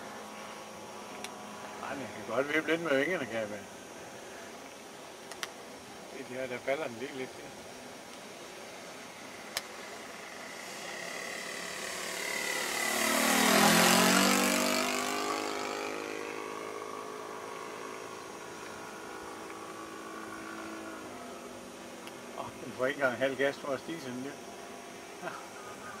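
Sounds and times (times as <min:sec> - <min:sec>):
model plane propeller engine passing: 0:08.7 - 0:26.0.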